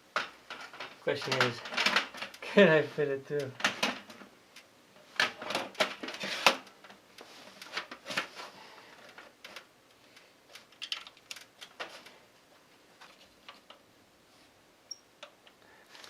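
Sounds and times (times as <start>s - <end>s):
cable connector clicks and rattles: 0.2s - 2.4s, 8.9s - 12.1s.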